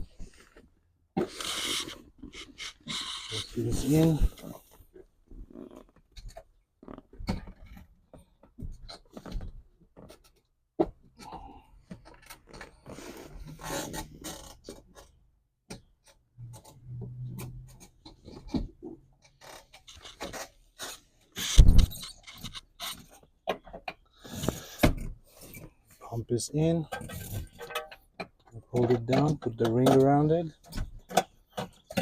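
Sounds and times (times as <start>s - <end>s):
fuel pump scraping and clicking: 1.2s - 4.7s.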